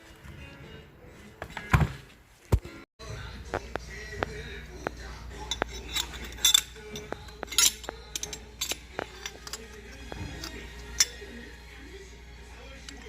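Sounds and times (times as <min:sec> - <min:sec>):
metal tools clinking: 0:05.4 - 0:11.4.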